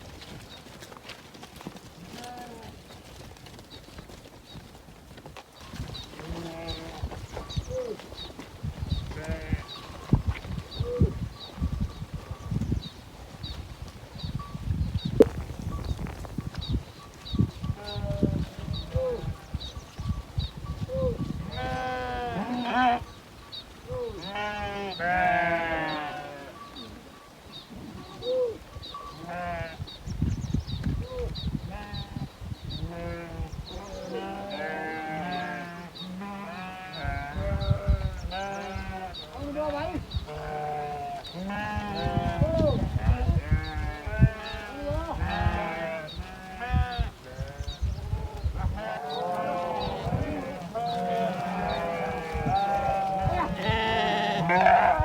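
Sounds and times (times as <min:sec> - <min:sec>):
sheep bleating: 0:06.2 - 0:07.1, 0:09.1 - 0:09.8, 0:21.5 - 0:23.0, 0:24.1 - 0:27.0, 0:29.2 - 0:29.8, 0:32.9 - 0:47.8, 0:48.6 - 0:55.0
low thumps and rustling: 0:14.8 - 0:17.6.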